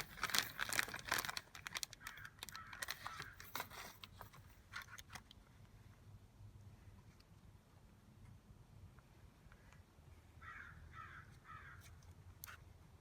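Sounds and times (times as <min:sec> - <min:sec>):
small clicks scrapes and crinkles: 0:00.0 - 0:05.4, 0:11.8 - 0:12.7.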